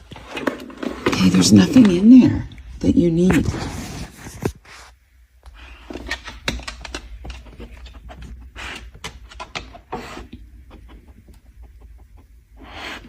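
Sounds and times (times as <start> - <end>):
dog scratching and rummaging: 5.6 - 13.0.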